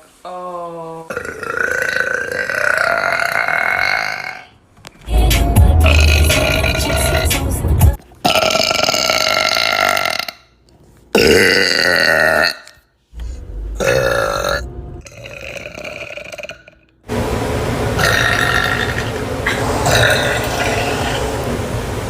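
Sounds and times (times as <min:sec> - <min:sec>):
person burping: 0:01.1 - 0:04.6, 0:05.8 - 0:07.3, 0:08.2 - 0:12.9, 0:13.7 - 0:17.0, 0:18.0 - 0:21.2.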